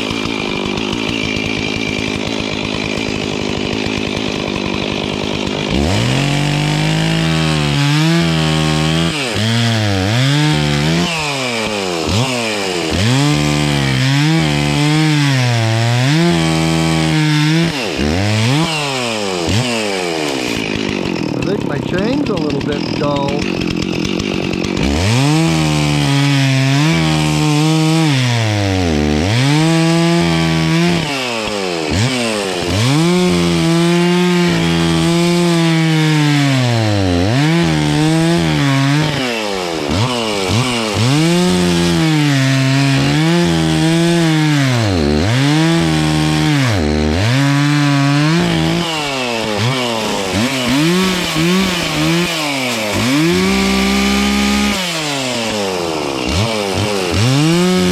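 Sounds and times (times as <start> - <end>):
chainsaw cutting wood: 0.0 - 57.9.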